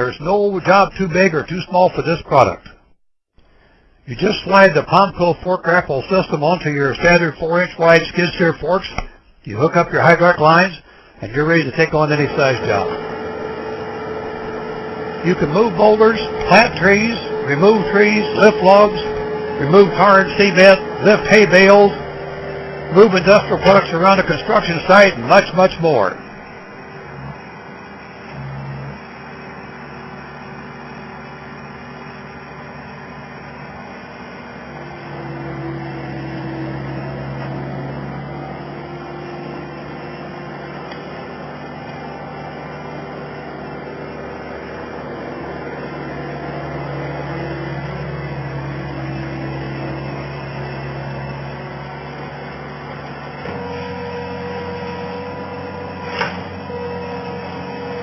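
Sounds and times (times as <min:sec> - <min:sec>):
skid steer engine running: 0:03.6 - 0:58.0.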